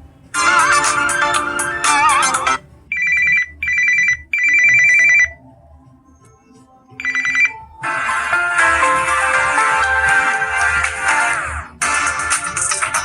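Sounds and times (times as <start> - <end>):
trilling electronic phone ring: 0.4 - 5.4, 7.0 - 10.7
melodic electronic ringtone: 0.4 - 13.0.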